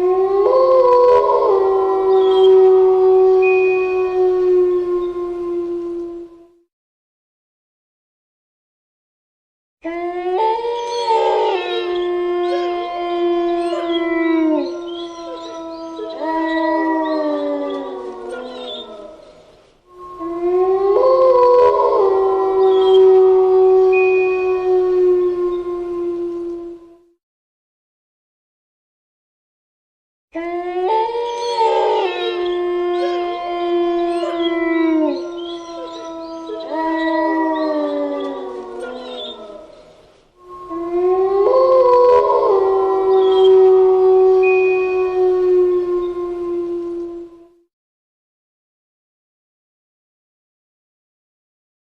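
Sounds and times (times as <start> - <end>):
dogs howling together: 0.0 - 6.4, 9.9 - 27.0, 30.4 - 47.6.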